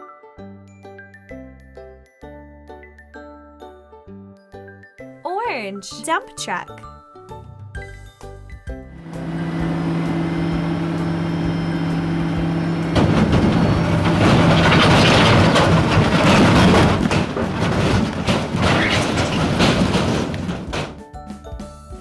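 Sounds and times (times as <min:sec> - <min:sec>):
truck engine running: 0:09.0 - 0:21.0.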